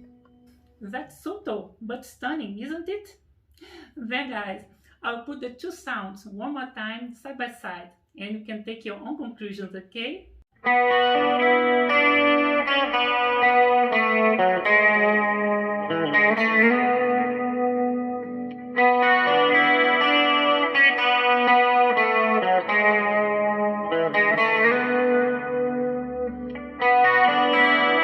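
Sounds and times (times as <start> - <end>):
electric guitar through an amp: 10.6 - 28.0.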